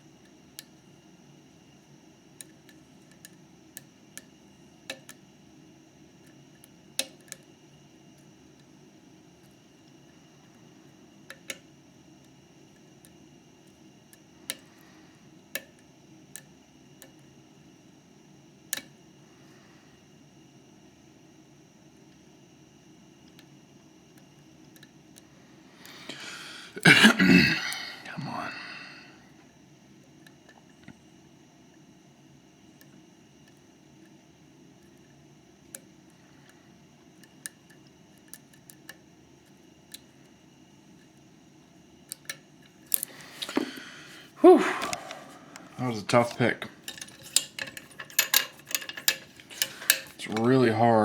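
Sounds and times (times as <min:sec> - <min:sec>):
steady low hum: 0:00.0 - 0:51.0
lock pick metallic clicks: 0:46.8 - 0:50.2.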